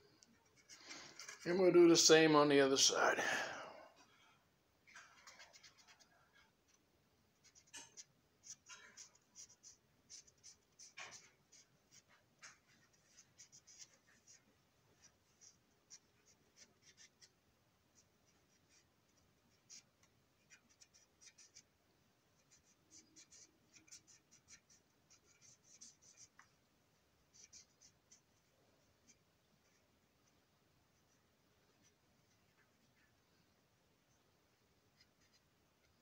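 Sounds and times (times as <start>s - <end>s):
coloring tool scratching plastic: 4.9s - 6.8s, 7.4s - 21.8s, 22.4s - 26.6s, 27.3s - 30.4s, 35.0s - 36.0s.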